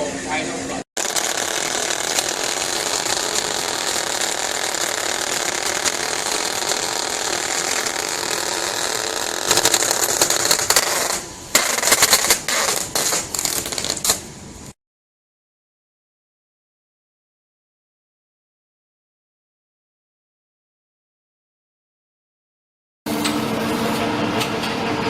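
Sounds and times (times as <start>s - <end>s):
cutting machine clattering: 1.0s - 14.1s.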